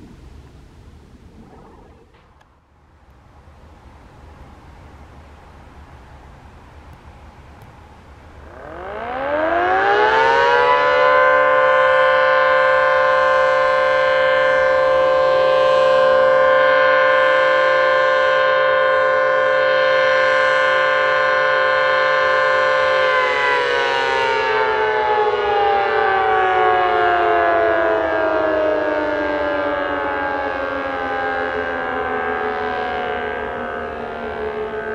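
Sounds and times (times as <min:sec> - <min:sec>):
siren wailing: 0:01.2 - 0:02.4, 0:08.4 - 0:34.9.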